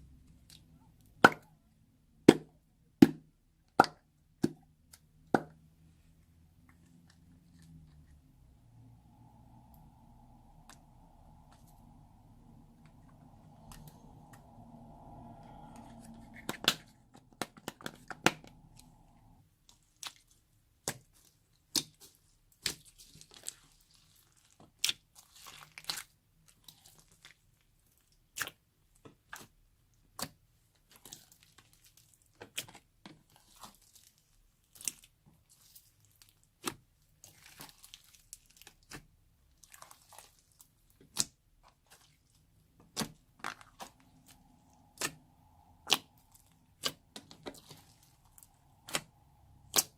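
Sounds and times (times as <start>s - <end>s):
low steady hum: 3.6s - 19.7s
slime crackling and popping: 19.8s - 28.6s, 30.1s - 49.9s.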